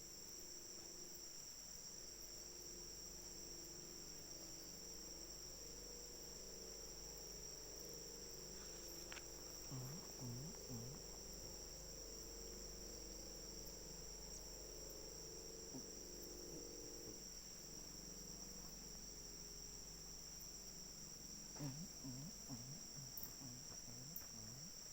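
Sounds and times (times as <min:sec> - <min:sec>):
insects chirring: 0:00.0 - 0:24.9
short low sounds: 0:21.6 - 0:24.8.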